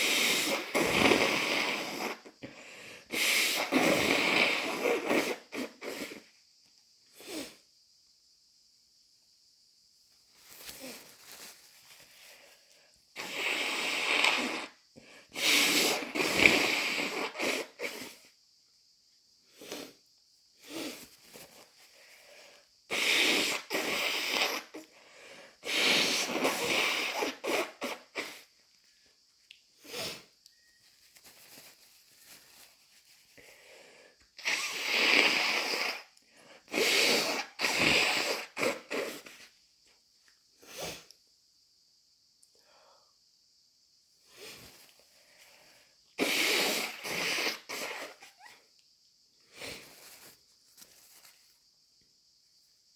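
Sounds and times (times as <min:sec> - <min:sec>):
person blowing nose: 0:00.0 - 0:06.3, 0:07.2 - 0:07.6, 0:13.2 - 0:18.3, 0:20.6 - 0:21.0, 0:22.9 - 0:24.9, 0:25.6 - 0:28.5, 0:29.8 - 0:30.3, 0:34.4 - 0:39.5, 0:46.2 - 0:48.6, 0:49.5 - 0:50.3
faint breathing: 0:02.4 - 0:03.7, 0:33.4 - 0:34.2.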